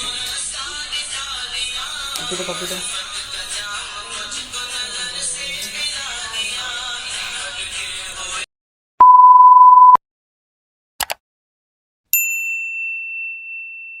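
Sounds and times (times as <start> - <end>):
background music: 0.0 - 8.4
loud steady beep: 9.0 - 10.0
high bell-like ding: 12.2 - 14.0.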